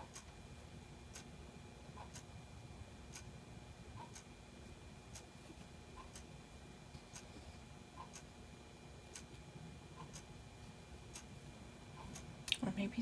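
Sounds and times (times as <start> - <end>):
clock ticking: 0.0 - 0.4, 1.1 - 2.4, 3.0 - 4.4, 5.0 - 5.3, 5.9 - 6.4, 7.9 - 8.3, 9.0 - 10.3, 11.0 - 12.6.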